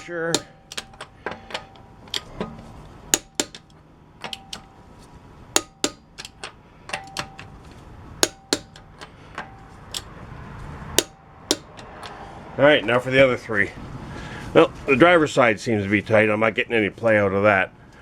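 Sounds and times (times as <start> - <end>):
torque wrench clicking: 0.0 - 2.3, 3.1 - 4.8, 5.6 - 7.5, 11.0 - 12.2.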